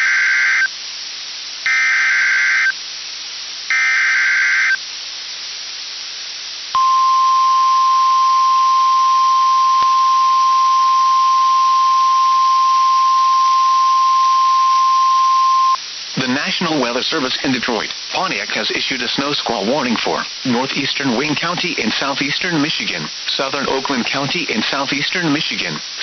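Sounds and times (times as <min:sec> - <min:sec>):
single-pitch warning alarm tone: 0:06.8 - 0:15.8
radio hiss: 0:08.6 - 0:26.0.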